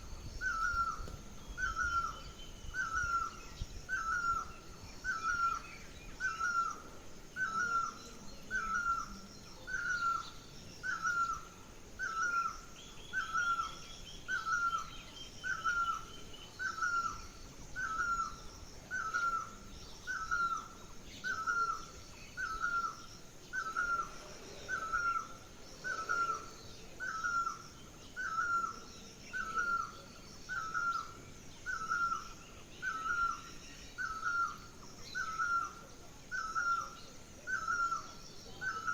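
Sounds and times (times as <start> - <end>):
other birds chirping: 0.0 - 38.9.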